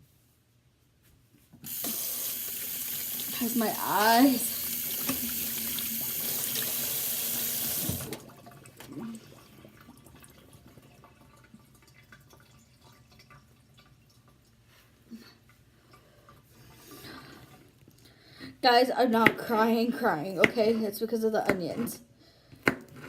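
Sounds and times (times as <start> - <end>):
kitchen tap running into sink: 1.6 - 14.6.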